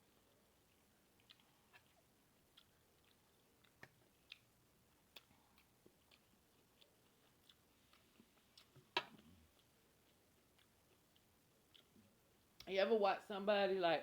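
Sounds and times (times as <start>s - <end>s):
chewing food: 0.0s - 12.7s.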